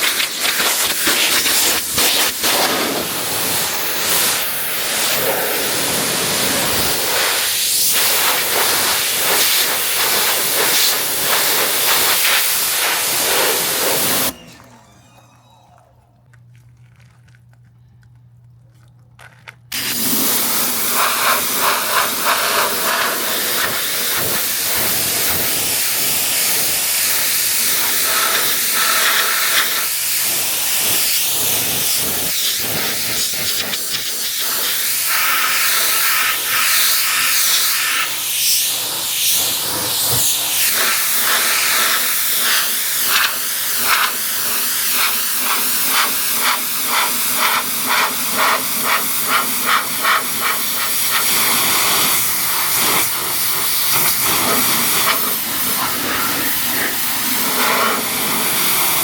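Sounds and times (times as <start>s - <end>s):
pressure washer spraying water: 0.0s - 14.6s, 19.7s - 59.0s
faint low hum: 14.5s - 19.7s.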